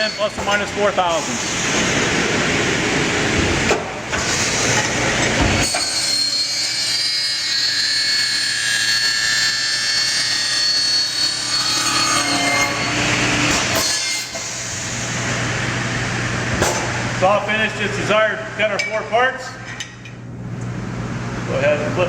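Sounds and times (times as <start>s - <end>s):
circular saw cutting metal: 0.0s - 1.7s, 5.6s - 15.1s.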